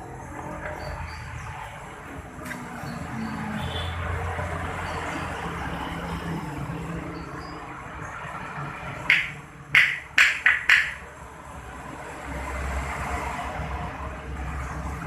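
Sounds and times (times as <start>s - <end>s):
sharp knocks: 9.1s - 11.0s.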